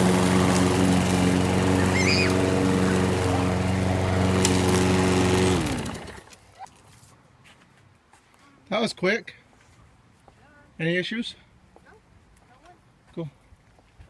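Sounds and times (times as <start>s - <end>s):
lawn mower engine running: 0.0s - 6.3s.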